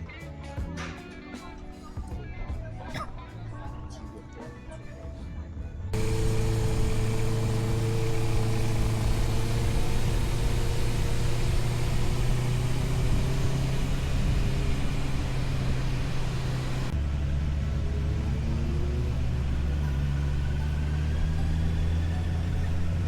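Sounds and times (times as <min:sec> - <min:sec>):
motorcycle engine running: 0:06.0 - 0:23.0.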